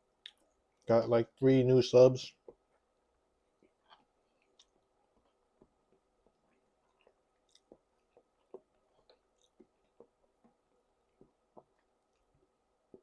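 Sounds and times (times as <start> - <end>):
faint chewing mouth clicks: 3.6 - 10.6.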